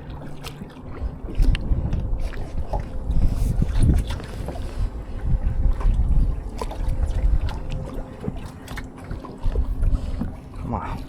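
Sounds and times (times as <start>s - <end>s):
water lapping around boat: 0.0s - 11.0s
wind rumbling on microphone: 0.0s - 11.0s.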